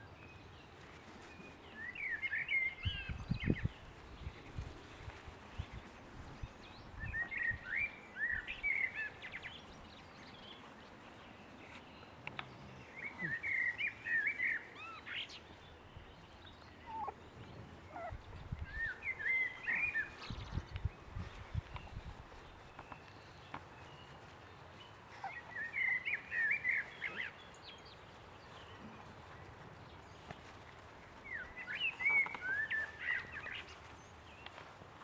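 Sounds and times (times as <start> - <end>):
bird singing chirps: 11.7 - 24.3, 25.1 - 28.9.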